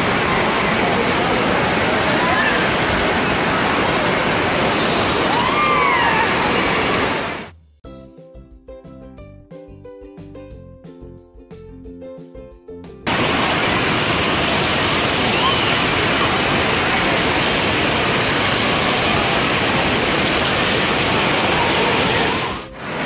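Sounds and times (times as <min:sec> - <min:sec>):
water rushing and spraying: 0:00.0 - 0:07.5, 0:13.1 - 0:23.0
music: 0:07.5 - 0:13.1.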